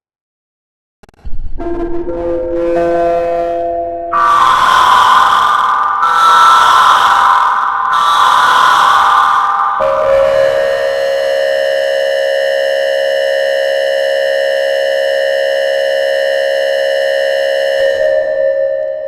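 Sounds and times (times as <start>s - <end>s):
buzzy electronic alert tone: 1.6s - 13.2s.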